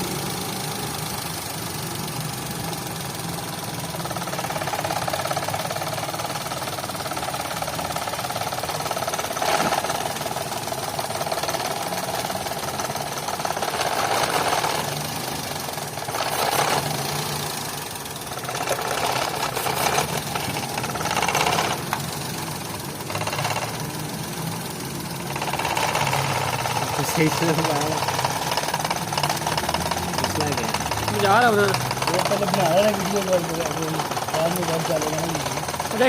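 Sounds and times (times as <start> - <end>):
petrol engine running roughly: 0.0 - 36.0.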